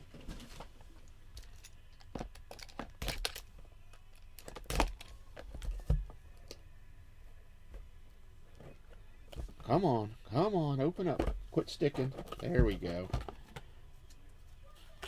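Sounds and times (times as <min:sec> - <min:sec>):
packaging crinkling and clicking: 0:01.4 - 0:05.8.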